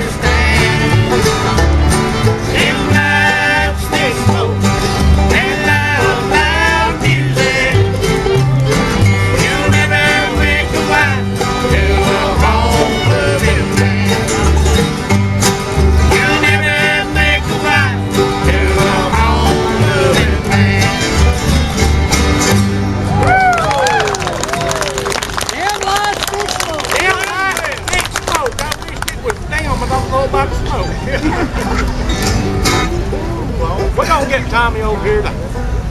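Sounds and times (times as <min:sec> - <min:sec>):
two-note bass line: 0:00.0 - 0:23.2
bluegrass band playing: 0:00.0 - 0:26.0, 0:26.7 - 0:35.9.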